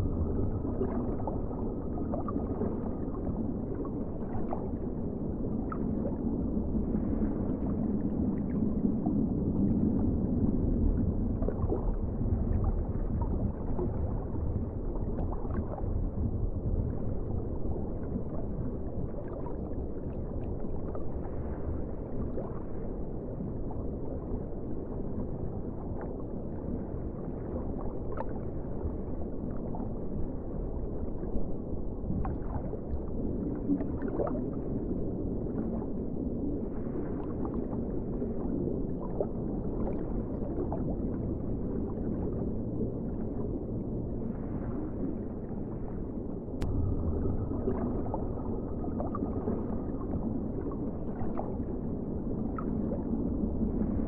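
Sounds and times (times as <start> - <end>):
muffled underwater rumble: 0.0 - 54.0
bubbling: 46.6 - 54.0.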